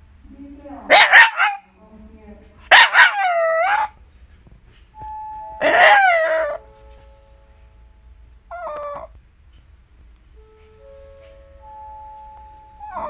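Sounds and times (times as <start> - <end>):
dog howling: 2.8 - 4.0, 5.6 - 6.6, 12.8 - 13.0
faint chime-like tones: 5.0 - 8.5, 10.4 - 13.0.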